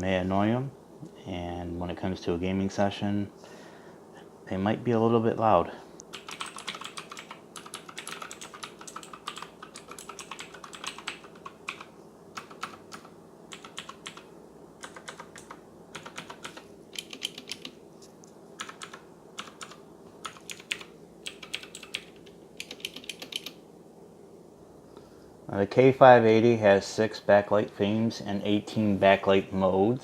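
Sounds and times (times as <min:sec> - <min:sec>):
mechanical keyboard clicks: 0:06.1 - 0:14.2, 0:14.8 - 0:17.8, 0:18.6 - 0:23.6.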